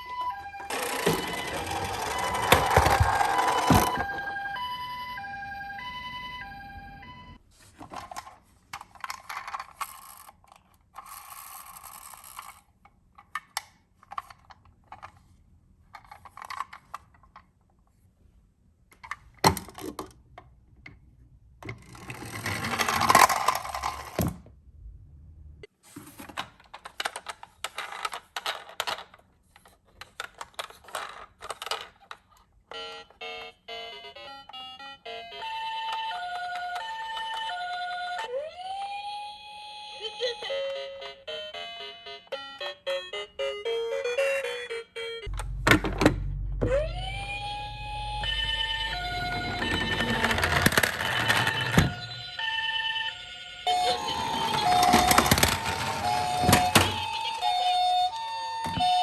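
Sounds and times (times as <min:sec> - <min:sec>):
electronic two-tone siren: 0:00.0 - 0:07.4, 0:45.2 - 0:59.0
toy car rattling on a slope: 0:00.5 - 0:04.6, 0:07.8 - 0:17.6, 0:21.7 - 0:24.4, 0:26.0 - 0:32.5, 0:47.7 - 0:59.0.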